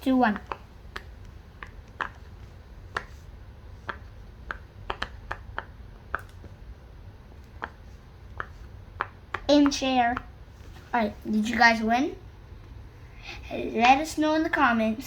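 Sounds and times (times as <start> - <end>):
fidget toy bubbles popping: 0.3 - 3.1, 3.7 - 6.5.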